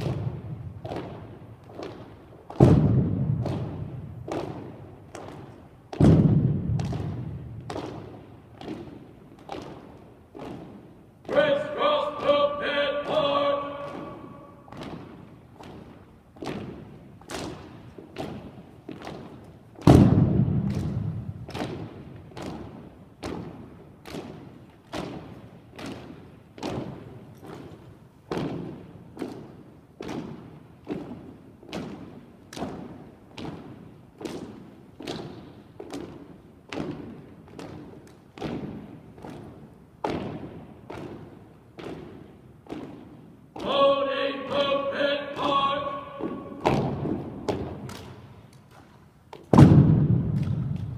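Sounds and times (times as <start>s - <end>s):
rhythmic thuds on hard floor: 0.0s - 11.4s, 13.0s - 43.8s
heavy deep thump: 49.5s - 50.9s.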